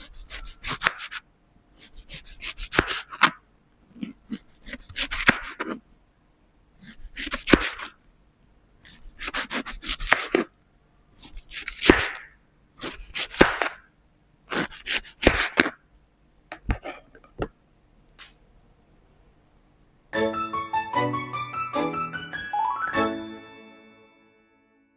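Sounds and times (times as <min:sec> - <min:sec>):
knife cutting pineapple: 0:00.0 - 0:01.2, 0:01.8 - 0:03.4, 0:04.0 - 0:05.8, 0:06.8 - 0:08.0, 0:08.8 - 0:10.5, 0:11.2 - 0:13.9, 0:14.5 - 0:15.8.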